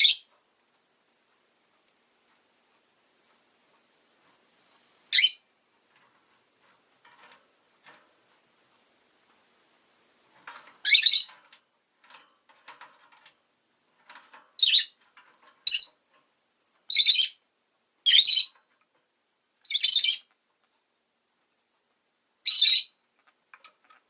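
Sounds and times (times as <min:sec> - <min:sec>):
lovebird shrill chirps: 0:00.0 - 0:00.3, 0:05.1 - 0:05.5, 0:10.8 - 0:11.3, 0:14.6 - 0:15.0, 0:15.6 - 0:16.0, 0:16.9 - 0:17.4, 0:18.0 - 0:18.5, 0:19.6 - 0:20.3, 0:22.4 - 0:23.0.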